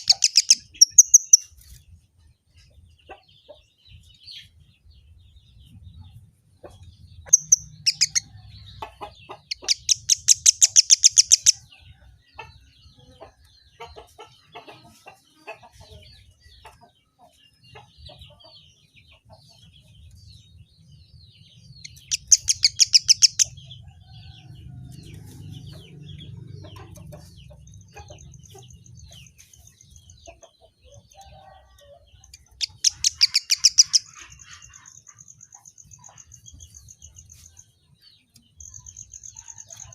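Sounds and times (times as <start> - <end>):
soft bird chirps: 0.0 - 3.2, 3.9 - 39.9.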